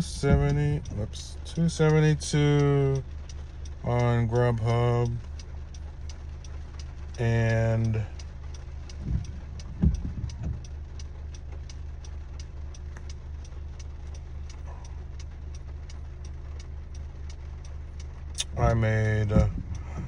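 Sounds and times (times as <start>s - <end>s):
low thumps: 0.0s - 1.0s, 8.9s - 11.0s, 18.4s - 20.0s
car engine idling: 0.0s - 20.0s
even ticking: 0.0s - 20.0s.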